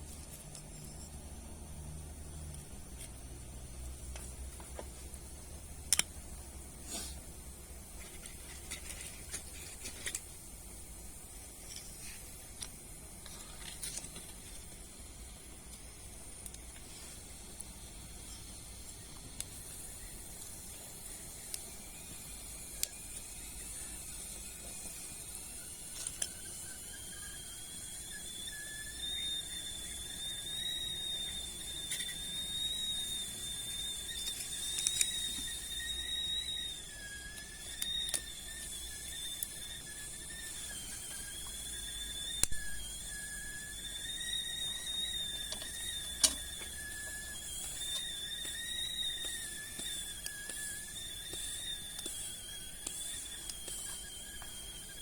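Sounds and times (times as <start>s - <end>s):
stove burning with steady hiss: 0.0s - 55.0s
thin whistling tone: 0.0s - 55.0s
wood fire crackles: 0.0s - 55.0s.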